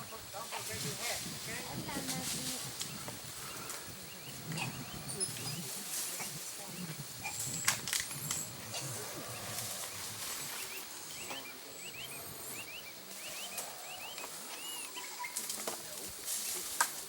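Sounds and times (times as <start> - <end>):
steady high hiss: 0.0 - 17.0
bird chirping: 1.5 - 16.6
distant howler monkeys roaring: 3.4 - 15.8.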